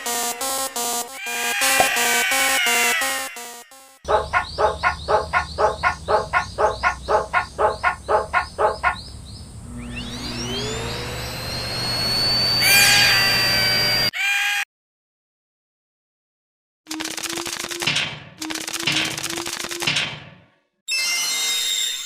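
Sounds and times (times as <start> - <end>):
level-crossing alarm bell: 0.0 - 4.0
whine settling into high tone: 9.4 - 14.1.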